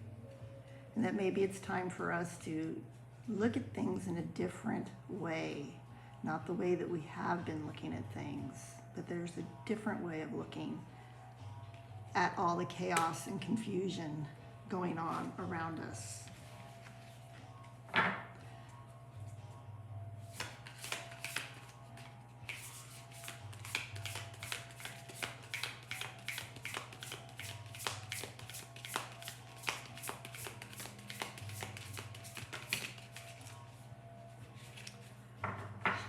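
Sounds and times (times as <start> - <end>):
cards being shuffled: 20.3 - 33.6, 34.5 - 35.1.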